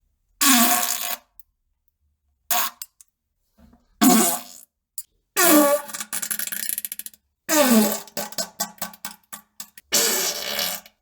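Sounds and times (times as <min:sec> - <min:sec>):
buzzy fart sounds: 0:09.9 - 0:11.0.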